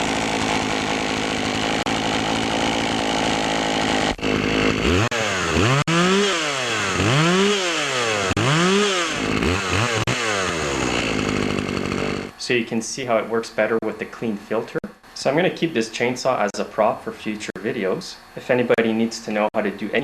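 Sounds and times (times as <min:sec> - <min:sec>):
chainsaw engine revving: 0:00.0 - 0:12.4.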